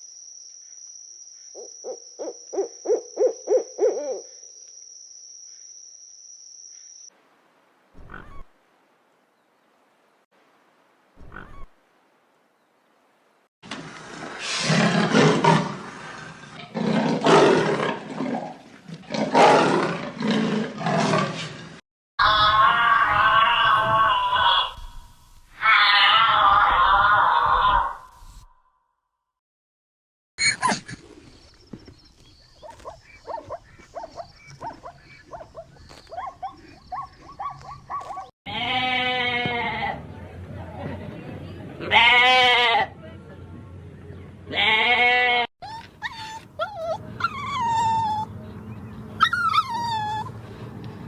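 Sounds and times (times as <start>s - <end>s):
animal yelping calls: 1.6s - 4.3s, 8.0s - 8.5s, 11.2s - 11.7s, 32.6s - 38.3s, 45.6s - 48.3s, 49.2s - 50.4s
tiger roaring: 14.4s - 21.7s
drawn-out animal bleat: 38.5s - 40.0s, 41.8s - 42.9s, 44.5s - 45.5s.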